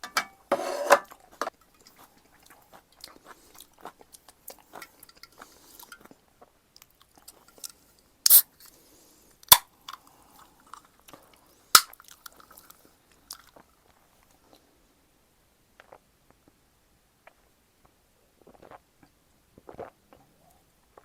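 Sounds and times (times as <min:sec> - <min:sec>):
close chewing and biting: 0:01.1 - 0:06.2, 0:09.4 - 0:14.3
wet mouth clicks: 0:07.2 - 0:08.4.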